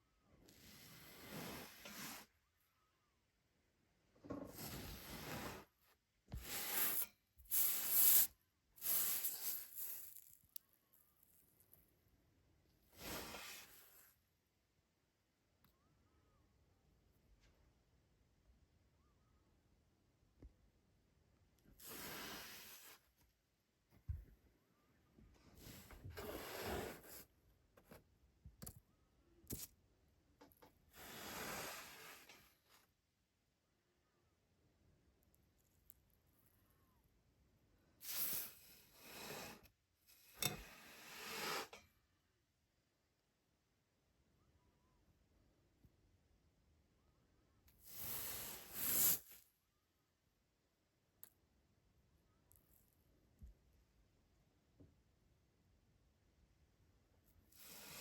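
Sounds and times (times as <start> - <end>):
sand being cut swishing: 6.4 - 8.3.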